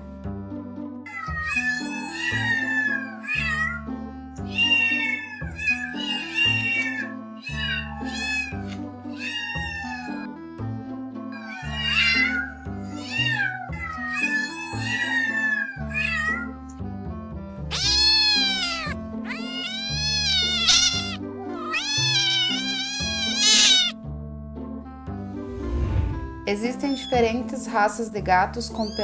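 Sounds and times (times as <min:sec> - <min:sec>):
background music: 0:00.0 - 0:29.0
cat meowing: 0:01.1 - 0:03.9, 0:04.5 - 0:10.4, 0:11.3 - 0:16.5, 0:17.6 - 0:24.0, 0:26.9 - 0:27.2.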